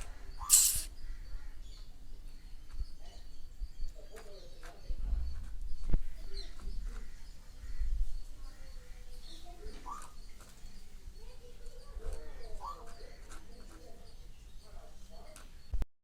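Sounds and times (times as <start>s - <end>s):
birds chirping: 0.0s - 15.8s
loud hiss-like burst: 0.4s - 0.9s.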